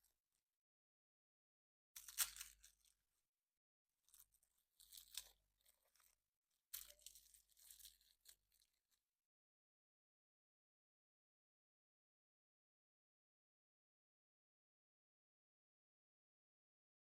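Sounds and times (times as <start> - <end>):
wrapper crinkling and tearing: 2.0 - 3.0, 4.1 - 8.8.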